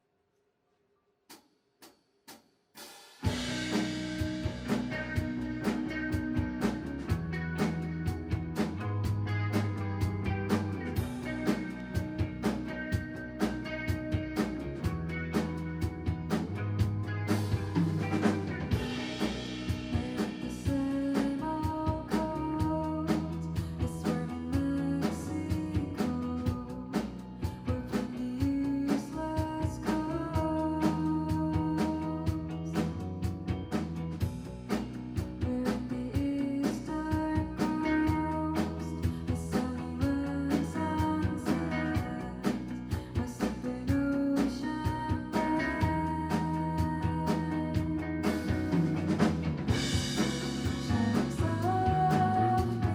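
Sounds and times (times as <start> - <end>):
steady drum beat: 1.8 - 52.9
drum hits: 3.2 - 21.0, 48.2 - 52.9
guitar and bass notes: 3.2 - 52.9.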